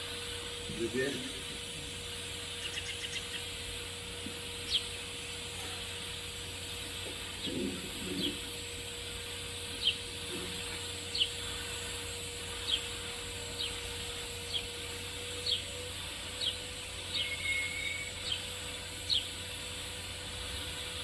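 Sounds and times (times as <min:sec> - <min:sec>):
steady hum: 0:00.0 - 0:21.0
small bird chirping: 0:02.6 - 0:03.5, 0:04.6 - 0:05.0.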